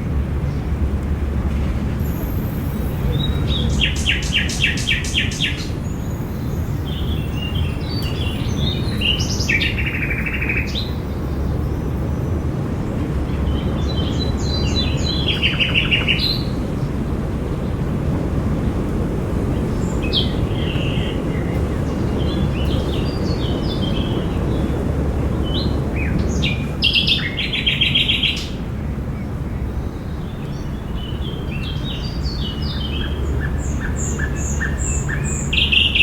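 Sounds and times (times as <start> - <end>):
steady low rumble: 0.0 - 26.9
songbirds trilling: 0.0 - 36.0.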